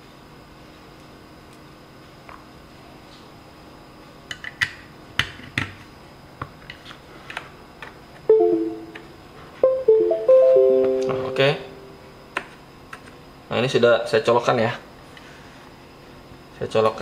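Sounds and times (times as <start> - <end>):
plucked-string music: 9.6 - 11.9.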